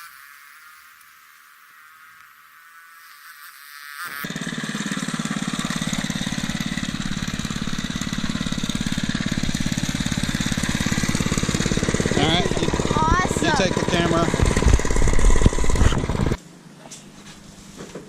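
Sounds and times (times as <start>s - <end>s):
small single-cylinder engine running: 2.8s - 16.4s.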